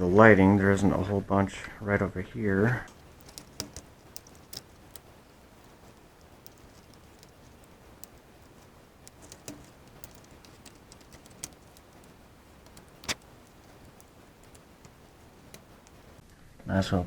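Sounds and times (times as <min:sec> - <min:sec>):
small parts clicking and tapping: 0:02.9 - 0:16.2.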